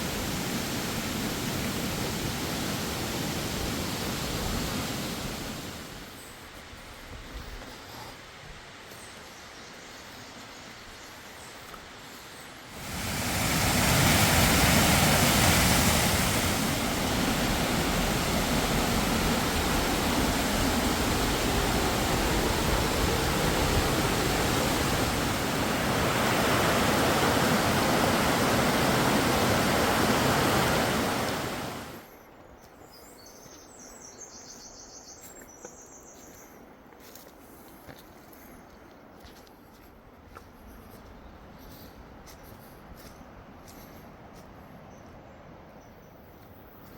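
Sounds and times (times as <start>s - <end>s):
water rushing: 0.0s - 6.1s, 12.6s - 32.1s.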